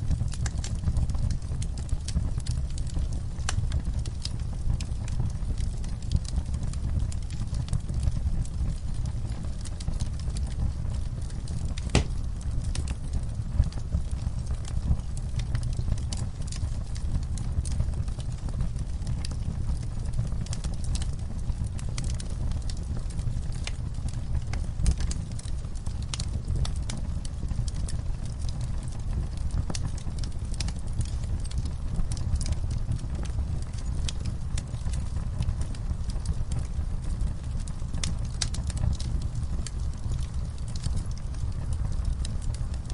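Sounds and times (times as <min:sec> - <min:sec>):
fire crackling and popping: 0:00.0 - 0:42.9
low rumble of flames: 0:00.0 - 0:42.9.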